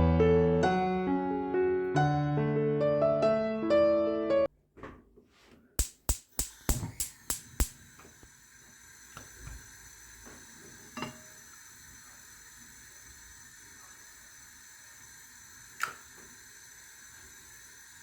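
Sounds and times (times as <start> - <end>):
piano music: 0.0 - 4.5
sharp kitchen knocks: 5.8 - 7.7
faint steady hiss: 5.8 - 18.0.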